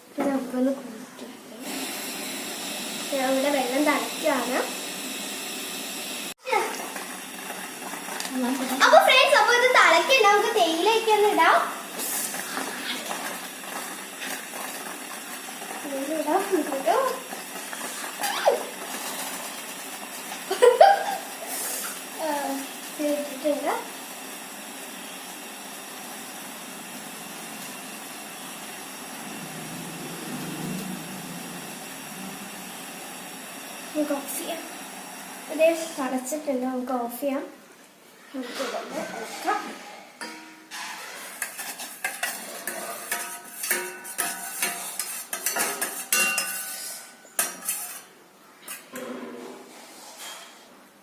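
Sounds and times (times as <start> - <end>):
gas stove hissing: 0.0 - 51.0
water boiling in a pot: 0.0 - 51.0
spoon clinking in teapot: 45.4 - 46.8.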